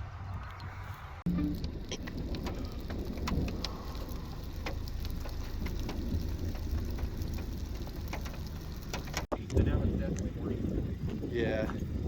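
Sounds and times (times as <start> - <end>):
low car rumble: 0.3 - 12.0
raindrops ticking on vehicle: 1.3 - 9.3.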